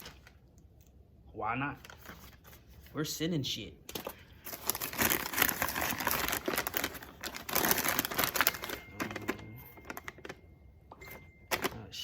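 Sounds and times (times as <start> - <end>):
packaging crinkling: 0.0 - 0.9, 3.9 - 10.4.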